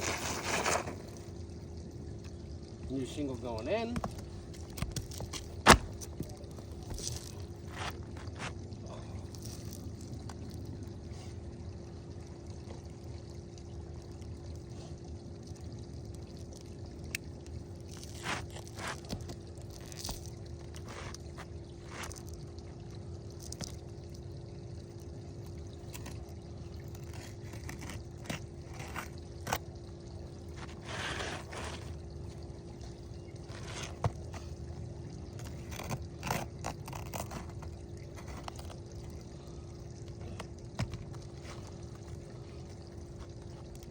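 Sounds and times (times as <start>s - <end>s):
roof shingle scraping: 0.0s - 1.3s, 30.5s - 32.0s
low hum: 0.0s - 43.9s.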